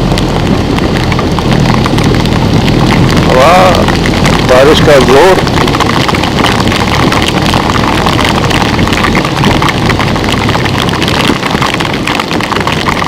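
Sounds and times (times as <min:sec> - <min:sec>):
heavy rain and wind rush: 0:00.0 - 0:13.0
motorcycle engine running: 0:00.0 - 0:13.0.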